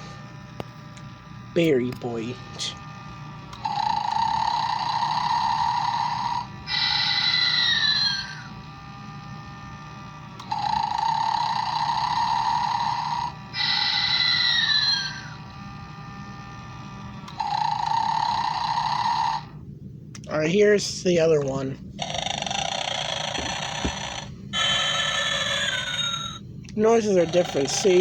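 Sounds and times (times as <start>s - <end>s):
toy snoring inhale: 3.6s - 8.5s, 10.4s - 15.4s, 17.3s - 19.6s, 22.0s - 26.4s.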